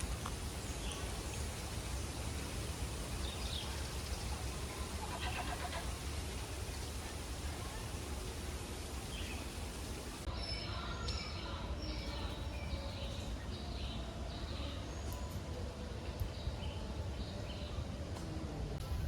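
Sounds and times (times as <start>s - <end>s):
low rumble and hiss: 0.0s - 19.0s.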